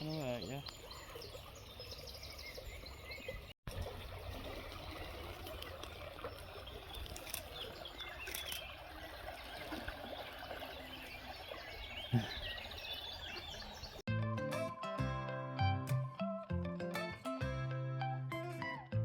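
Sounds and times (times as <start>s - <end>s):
small birds chirping: 0.0s - 3.6s, 4.6s - 14.0s.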